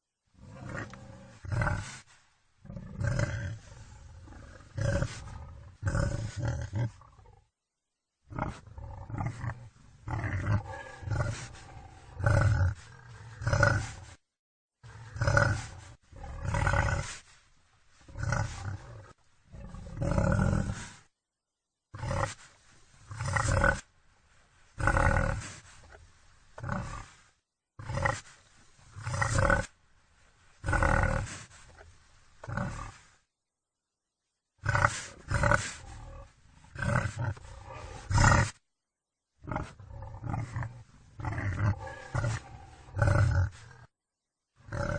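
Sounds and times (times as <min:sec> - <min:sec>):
wild boar grunting: 0:00.4 - 0:02.0, 0:02.6 - 0:07.4, 0:08.3 - 0:14.2, 0:14.8 - 0:17.3, 0:18.1 - 0:21.1, 0:21.9 - 0:22.5, 0:23.1 - 0:23.9, 0:24.8 - 0:26.0, 0:26.6 - 0:29.8, 0:30.6 - 0:31.8, 0:32.4 - 0:33.2, 0:34.6 - 0:38.6, 0:39.4 - 0:43.9, 0:44.6 - 0:44.9.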